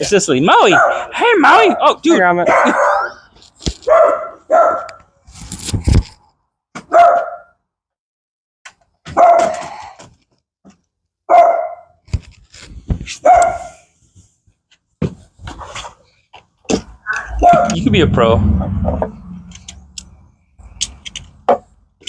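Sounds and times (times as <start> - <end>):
small dog barking: 2.5 - 3.2, 3.9 - 5.0, 6.9 - 7.5, 9.2 - 9.5, 11.3 - 11.8, 13.2 - 13.7
rumbling thud: 17.3 - 20.4.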